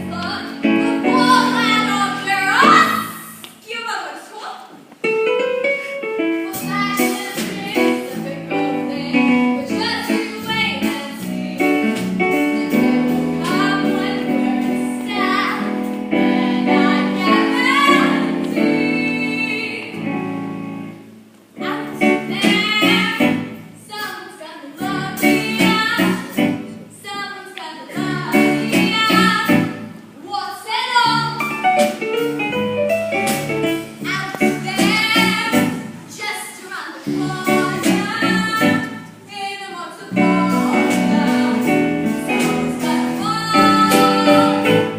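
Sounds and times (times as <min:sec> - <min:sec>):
instrumental accompaniment: 0:04.8 - 0:23.8, 0:24.8 - 0:27.0, 0:31.0 - 0:36.2, 0:40.1 - 0:44.9
people singing: 0:40.1 - 0:44.9.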